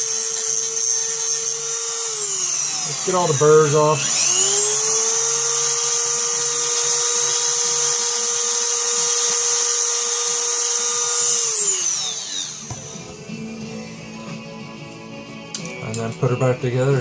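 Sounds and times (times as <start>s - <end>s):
handheld power tool whining: 0.0s - 14.2s.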